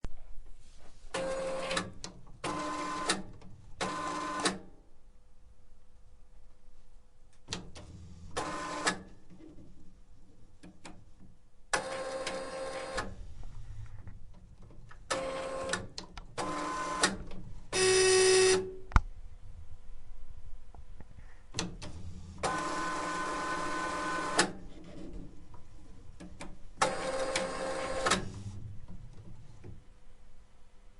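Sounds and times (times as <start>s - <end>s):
printer motors whining: 15.1s - 18.6s, 21.8s - 25.2s, 26.2s - 29.4s
printer clicks: 26.2s - 28.3s.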